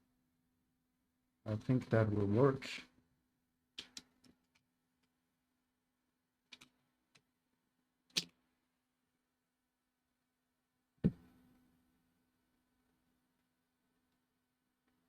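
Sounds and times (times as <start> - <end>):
small sharp clicks and taps: 3.7 - 5.2, 6.5 - 7.3, 8.1 - 8.4.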